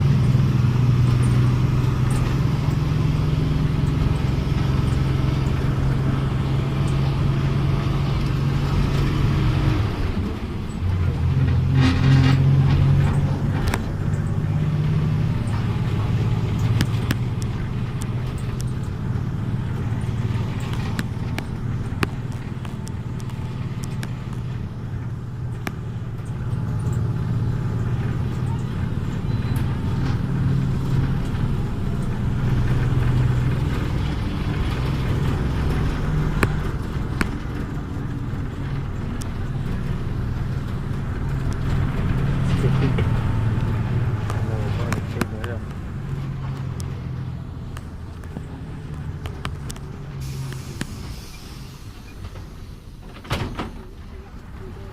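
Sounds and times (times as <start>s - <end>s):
bus diesel engine running: 0.0s - 54.9s
brief hiss: 50.2s - 52.2s.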